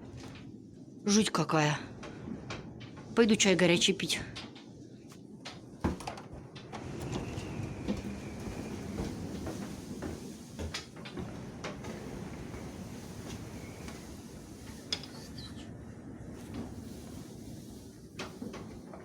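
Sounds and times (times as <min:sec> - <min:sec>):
blizzard wind rushing: 0:06.5 - 0:19.0
faint thin whistle: 0:15.1 - 0:15.7.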